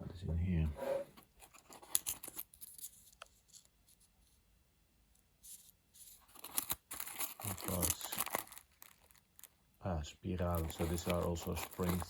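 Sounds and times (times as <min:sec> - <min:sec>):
small parts clicking and rustling: 0:01.2 - 0:04.0, 0:05.4 - 0:09.6, 0:10.5 - 0:12.0.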